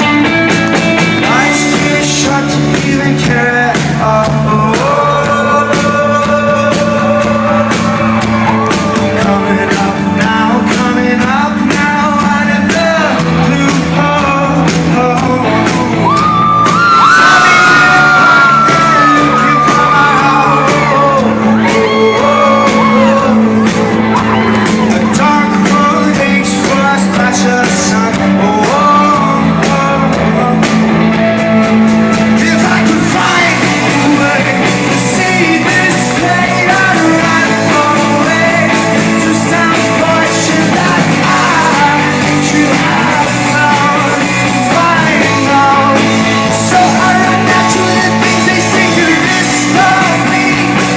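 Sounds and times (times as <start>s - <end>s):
man singing lead vocal: 0.0s - 50.9s
rock band playing live: 0.0s - 50.9s
crowd shouting along: 16.0s - 25.2s.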